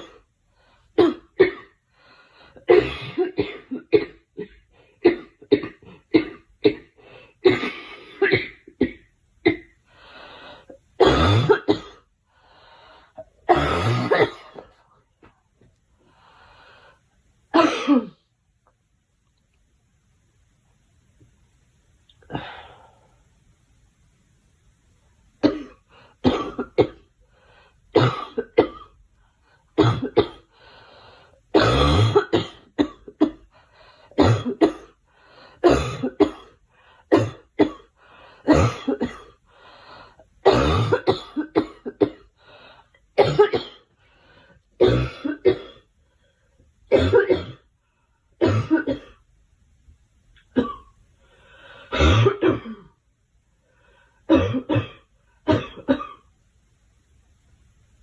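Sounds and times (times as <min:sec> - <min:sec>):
girl coughing: 0:02.7 - 0:09.6, 0:17.6 - 0:18.2, 0:25.4 - 0:27.0, 0:34.2 - 0:34.9, 0:35.6 - 0:36.5, 0:38.5 - 0:39.3, 0:40.5 - 0:42.3, 0:43.2 - 0:43.9, 0:46.9 - 0:47.6, 0:48.4 - 0:49.2, 0:51.9 - 0:52.9, 0:54.3 - 0:56.2.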